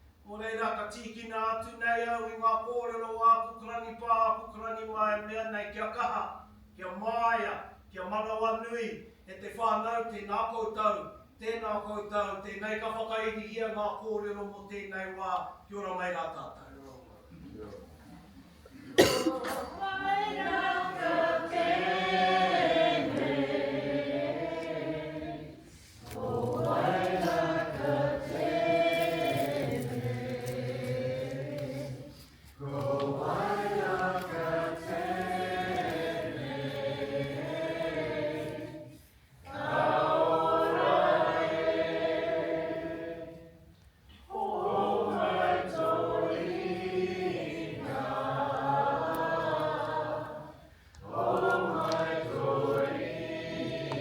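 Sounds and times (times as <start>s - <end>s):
group of voices singing: 19.3s - 43.7s, 44.3s - 54.0s.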